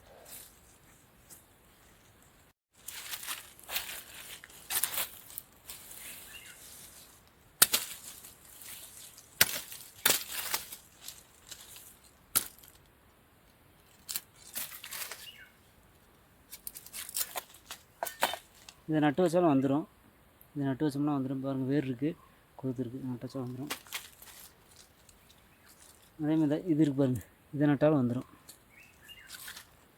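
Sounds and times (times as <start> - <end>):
rustling of leafy stalks: 0.0 - 12.9, 13.7 - 19.5, 21.7 - 29.9
stalks snapping and cracking: 2.8 - 6.6, 7.6 - 12.9, 13.9 - 15.4, 16.5 - 18.8, 23.4 - 26.2, 28.5 - 29.8.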